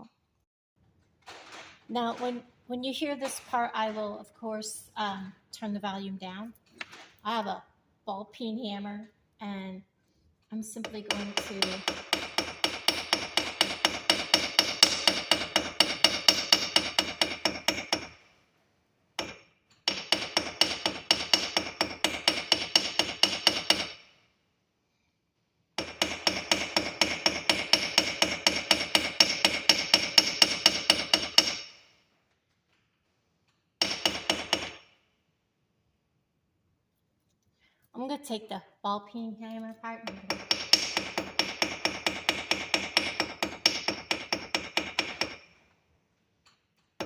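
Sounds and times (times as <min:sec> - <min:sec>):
hammer striking wire on anvil: 0:10.9 - 0:18.2, 0:19.2 - 0:24.1, 0:25.8 - 0:31.9, 0:33.5 - 0:35.0, 0:40.0 - 0:45.6.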